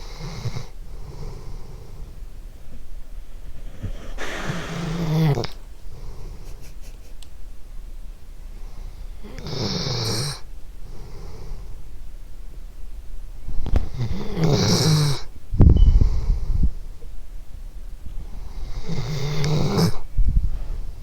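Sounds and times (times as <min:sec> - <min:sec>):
dog snoring: 0:00.0 - 0:02.2, 0:03.5 - 0:06.6, 0:08.6 - 0:11.8, 0:13.8 - 0:15.3, 0:18.3 - 0:20.1
dog breathing softly: 0:03.3 - 0:06.8.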